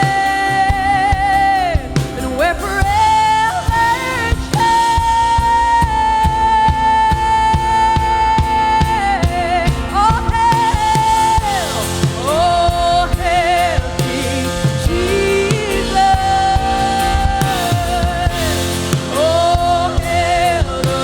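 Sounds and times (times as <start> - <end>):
drum kit beat: 0.0 - 21.0
person singing with vibrato: 0.0 - 21.0
band playing sustained chords: 9.2 - 21.0.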